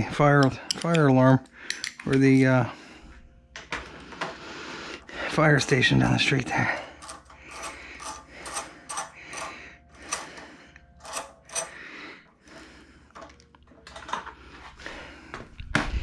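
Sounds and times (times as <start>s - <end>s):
hand tools clinking on metal: 5.6s - 12.0s.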